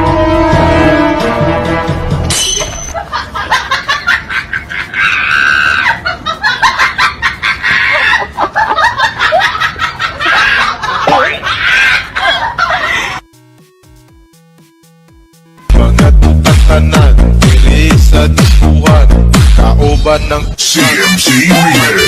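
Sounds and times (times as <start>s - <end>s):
people laughing: 3.0s - 13.2s
people screaming: 4.7s - 6.1s, 10.2s - 12.1s.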